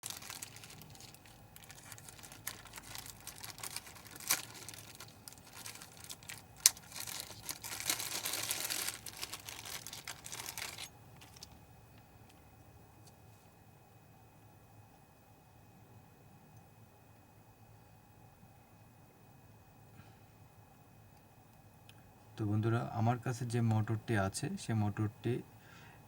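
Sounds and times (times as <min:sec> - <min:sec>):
loud rustling: 0:00.0 - 0:11.5
small objects clicking: 0:00.0 - 0:11.6
crinkling: 0:00.0 - 0:12.4.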